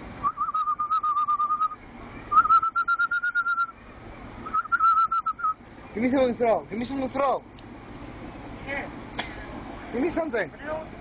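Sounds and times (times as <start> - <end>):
trilled warbling whistle: 0.2 - 3.8, 4.4 - 5.6.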